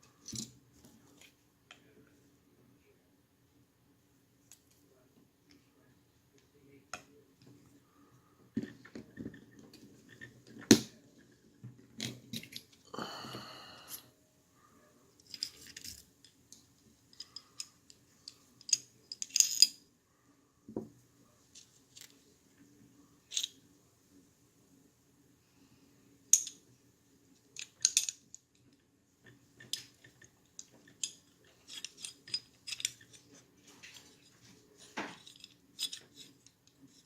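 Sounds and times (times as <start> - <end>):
metal pistol parts clicking: 17.1 - 19.8, 27.6 - 28.6, 29.2 - 33.3, 35.1 - 37.0.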